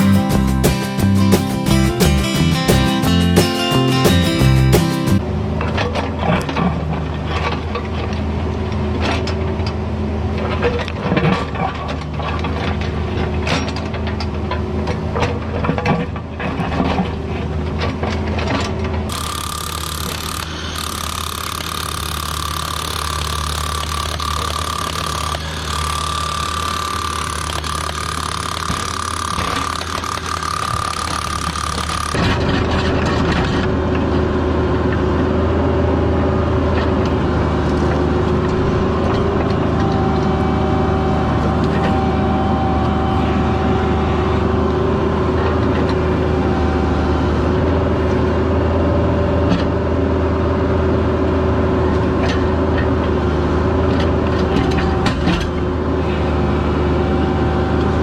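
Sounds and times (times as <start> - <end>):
high steady whine: 19.1 - 33.4
diesel engine droning: 20.0 - 58.0.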